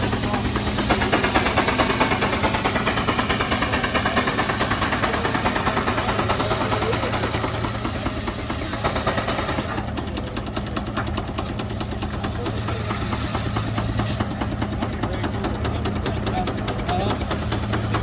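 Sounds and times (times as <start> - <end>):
antique engine exhaust pops: 0.0 - 18.0.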